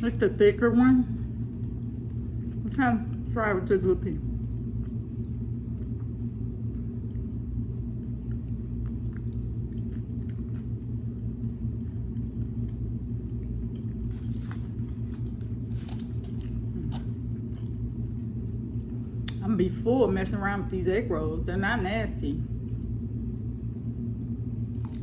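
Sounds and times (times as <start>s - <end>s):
steady low rumble: 0.0s - 25.0s
food packaging crackling: 14.0s - 17.3s, 24.5s - 25.0s.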